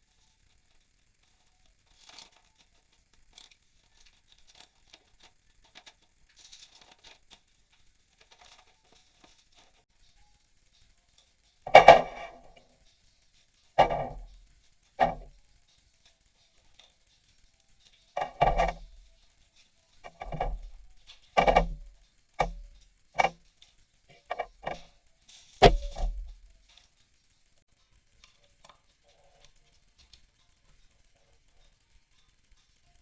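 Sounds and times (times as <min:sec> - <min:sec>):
hard objects knocking and clattering: 0:13.8 - 0:14.4, 0:18.2 - 0:18.9, 0:21.4 - 0:23.4, 0:25.6 - 0:26.4.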